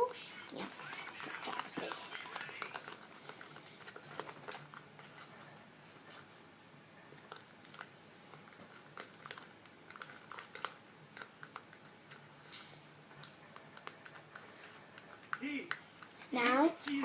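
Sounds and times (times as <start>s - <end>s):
slime stirring squelches: 0.0s - 5.4s.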